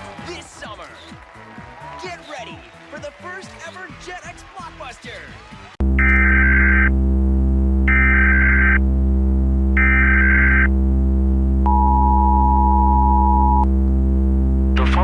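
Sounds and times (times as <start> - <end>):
low electronic drone: 5.8 - 15.0
two-pitch alert tone: 6.0 - 6.9, 7.9 - 8.8, 9.8 - 10.7, 11.6 - 13.7.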